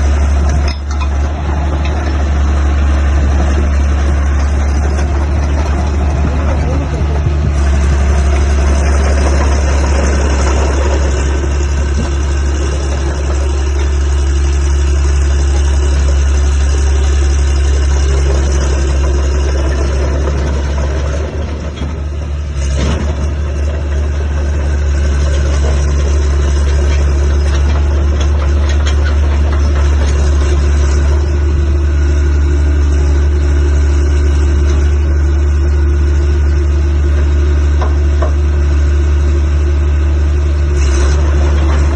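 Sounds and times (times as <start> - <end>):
bulldozer diesel engine running: 0.0 - 41.9.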